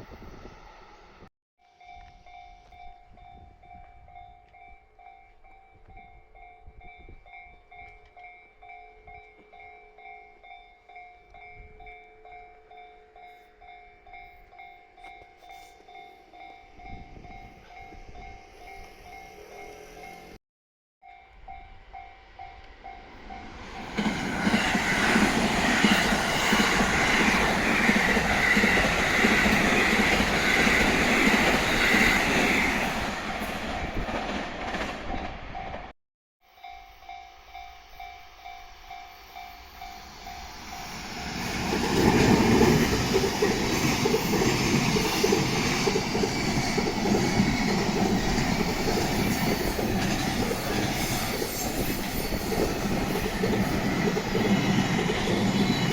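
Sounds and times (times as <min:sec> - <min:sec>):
train passing: 0:00.0 - 0:20.4, 0:21.0 - 0:35.9, 0:36.5 - 0:55.9
level-crossing bell clanging: 0:01.6 - 0:20.4.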